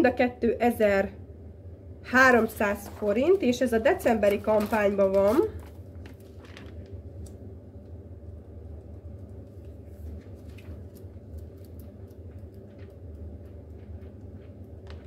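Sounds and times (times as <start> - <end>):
low background hum: 0.0 - 15.0.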